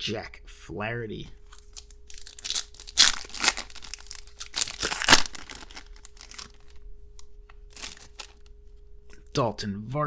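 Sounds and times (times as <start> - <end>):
cards being handled: 1.5 - 6.8, 7.8 - 8.5
wrapper crinkling: 1.5 - 6.8, 7.6 - 8.6.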